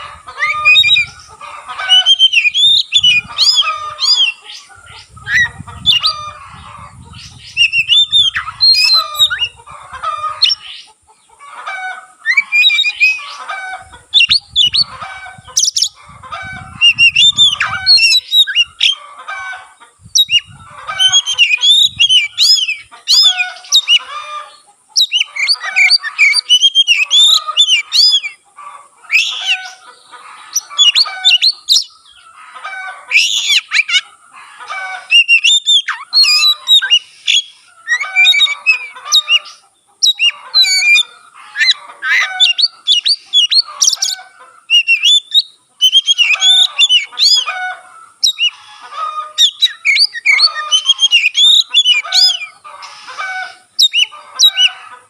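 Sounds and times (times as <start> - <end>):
songbird singing whistles: 0.4 - 1.2, 1.9 - 4.4, 7.5 - 9.6, 12.2 - 13.2, 14.2 - 14.9, 16.8 - 19.0, 20.2 - 24.0, 25.0 - 28.4, 35.1 - 39.4, 40.0 - 44.1, 44.8 - 47.5, 48.2 - 48.6, 49.4 - 52.5, 53.8 - 54.7.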